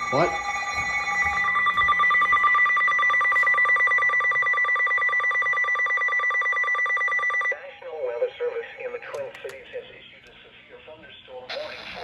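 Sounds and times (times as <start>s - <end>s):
emergency alert tone pulsing: 0.0s - 9.1s.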